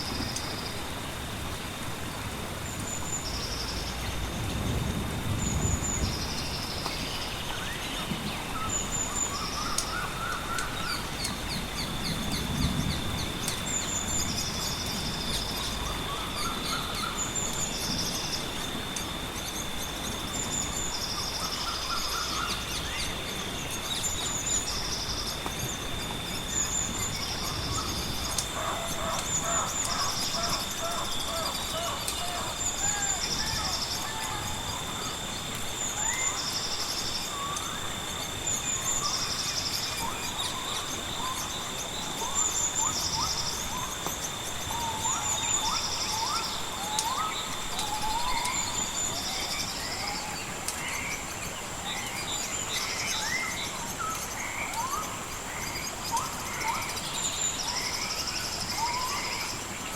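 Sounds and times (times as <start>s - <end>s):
low rumbles of thunder: 0.0s - 18.8s
rain: 0.0s - 59.9s
bird calling: 26.8s - 36.5s.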